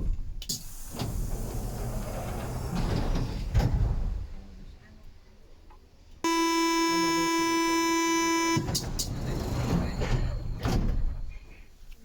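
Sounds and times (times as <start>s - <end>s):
train doors sliding shut: 0.1s - 4.4s, 8.4s - 11.6s
high pitched door buzzer: 6.3s - 8.8s.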